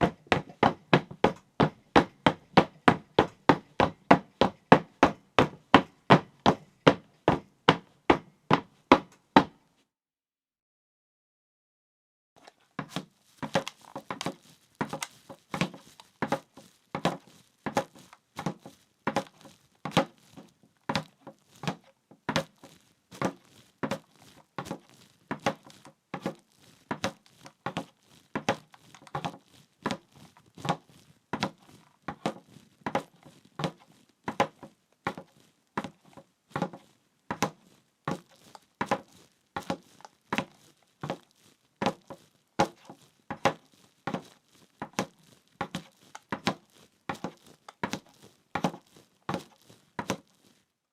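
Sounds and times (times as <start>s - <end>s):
footsteps walking: 12.4s - 50.7s.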